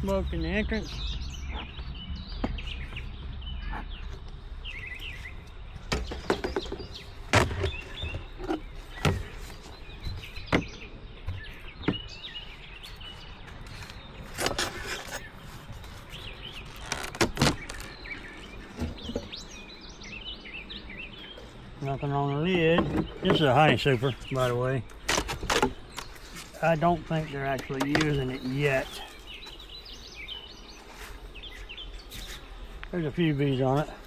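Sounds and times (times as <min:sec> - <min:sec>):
small birds chirping: 0:00.0 - 0:34.0
wooden beehive knocks and scrapes: 0:05.8 - 0:12.2, 0:13.9 - 0:15.4, 0:16.2 - 0:19.5, 0:22.6 - 0:24.4, 0:25.0 - 0:29.0.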